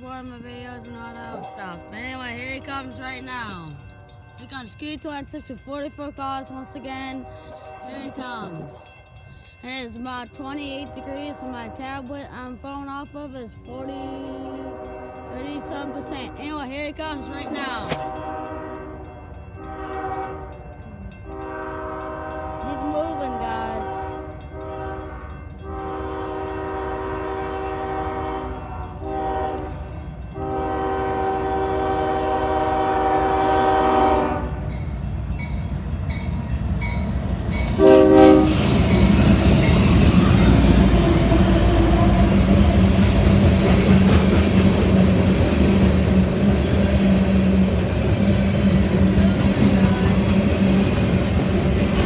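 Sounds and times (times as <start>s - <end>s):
freight train rumbling past: 0.0s - 52.0s
locomotive air horn blasts: 7.2s - 8.2s, 10.8s - 11.8s, 13.8s - 29.8s, 30.4s - 34.7s, 37.8s - 39.1s.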